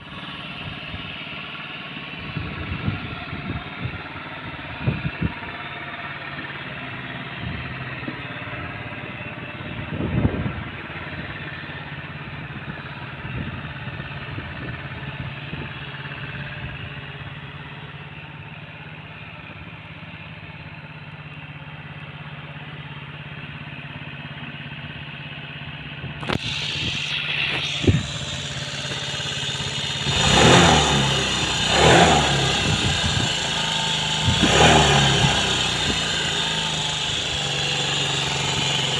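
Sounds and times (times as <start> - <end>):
scooter engine idling: 0.0 - 38.9
scooter engine revving: 26.2 - 38.9.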